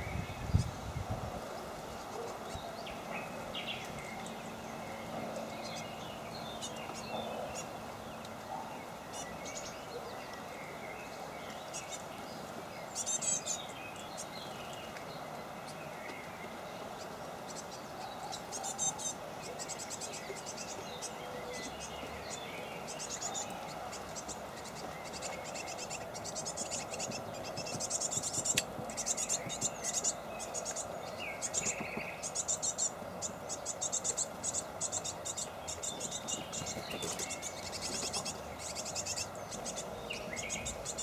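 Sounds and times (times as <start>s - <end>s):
outdoor background hiss: 0.0s - 41.0s
small birds calling: 0.0s - 41.0s
rapid high-pitched rattling calls: 25.1s - 41.0s.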